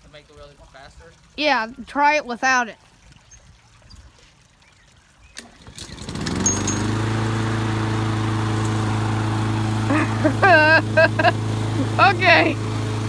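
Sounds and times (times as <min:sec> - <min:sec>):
lawnmower engine running: 0:05.4 - 0:13.0.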